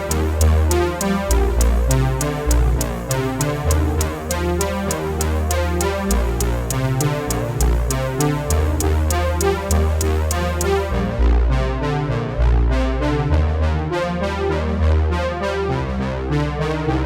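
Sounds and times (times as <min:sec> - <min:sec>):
drum machine beat: 0:00.0 - 0:10.9
hi-hat ticks: 0:00.0 - 0:11.0
synthesizer chords: 0:00.0 - 0:11.0
deep bass: 0:00.0 - 0:17.0.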